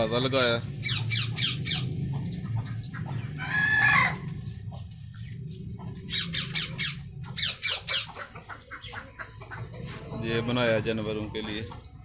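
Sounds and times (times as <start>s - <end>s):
steady low hum: 0.0s - 8.9s
caged birds squawking: 0.0s - 12.0s.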